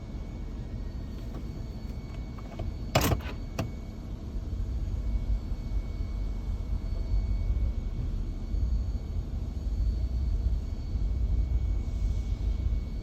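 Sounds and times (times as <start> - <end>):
engine low rumble: 0.0 - 13.0.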